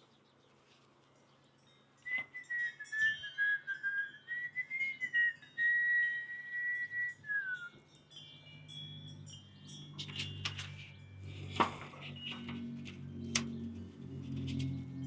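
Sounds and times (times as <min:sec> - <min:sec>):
person whistling a tune: 0:02.0 - 0:07.9.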